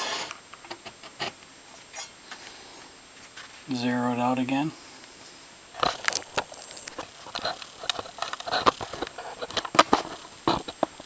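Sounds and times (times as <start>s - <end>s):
small clicks and taps: 5.8s - 11.0s.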